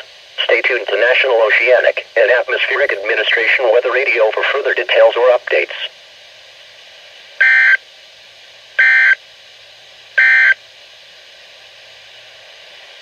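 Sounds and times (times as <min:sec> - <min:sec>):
radio hiss: 0:00.0 - 0:09.2
digital data tone bursts: 0:08.8 - 0:09.2, 0:10.2 - 0:10.6.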